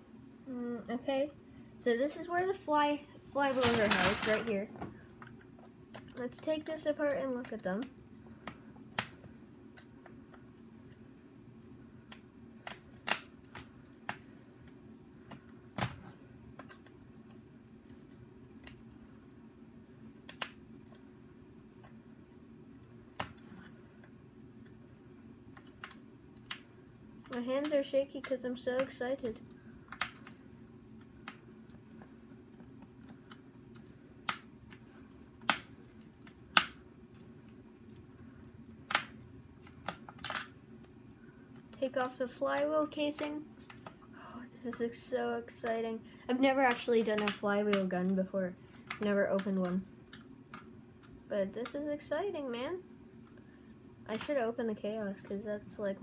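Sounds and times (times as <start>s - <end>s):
faint steady hum: 0.0s - 56.0s
plastic parts clicking: 38.9s - 40.5s
plastic clicks and clacks: 41.7s - 44.0s.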